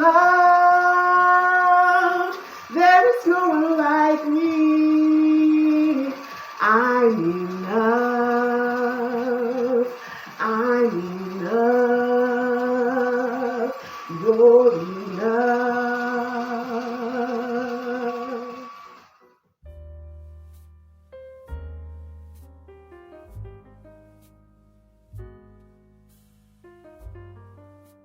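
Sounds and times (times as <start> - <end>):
woman singing unaccompanied: 0.0 - 18.9.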